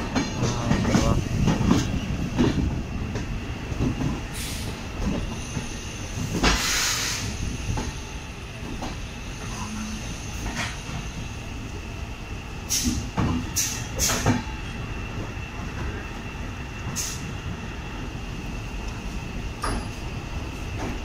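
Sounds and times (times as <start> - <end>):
train rumbling on rails: 0.0 - 21.0
short hissing bursts: 6.6 - 7.4.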